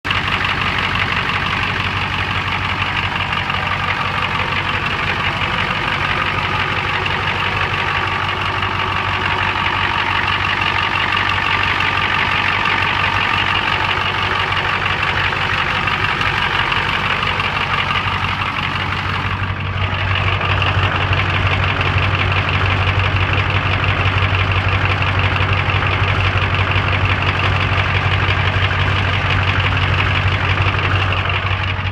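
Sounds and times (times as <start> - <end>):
diesel engine idling roughly: 0.0 - 31.9.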